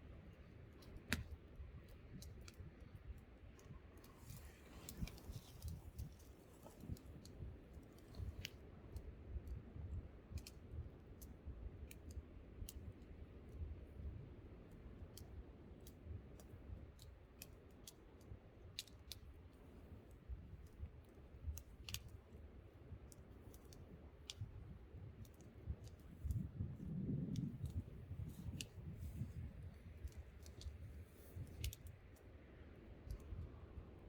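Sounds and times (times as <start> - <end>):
low rumble of wind: 0.0 - 34.0
campfire crackling and popping: 14.7 - 34.0.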